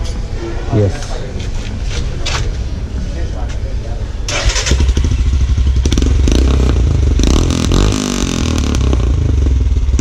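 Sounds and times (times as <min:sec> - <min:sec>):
motorcycle engine revving: 0:04.3 - 0:10.0.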